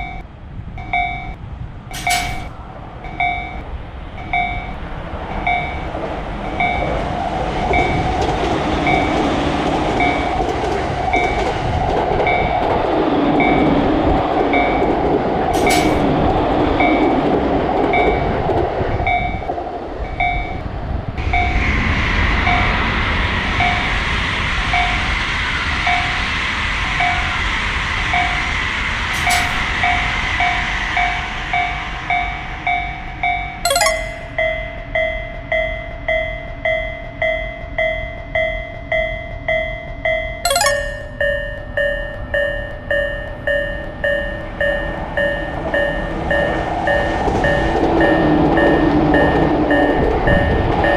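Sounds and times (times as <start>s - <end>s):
railroad crossing bell ringing: 29.2s - 50.9s.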